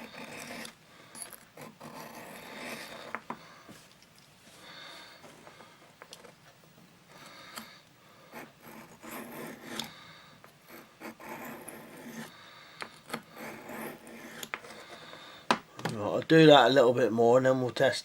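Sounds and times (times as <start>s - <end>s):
knife blade scraping on whetstone: 0.0s - 0.8s, 1.6s - 3.2s, 8.4s - 9.9s, 10.7s - 12.3s, 13.3s - 14.8s.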